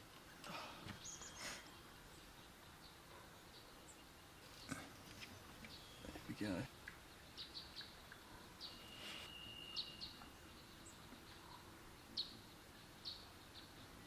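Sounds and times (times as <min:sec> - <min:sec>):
faint bird chirps: 0:00.5 - 0:14.0
thin high whistle: 0:08.8 - 0:10.0.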